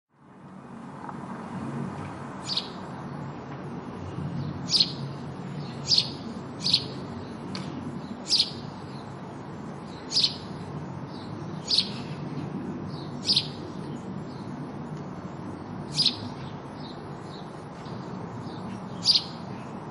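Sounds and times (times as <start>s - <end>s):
sparrow chirps: 2.4s - 2.9s, 4.1s - 9.2s, 9.8s - 14.6s, 15.8s - 19.9s.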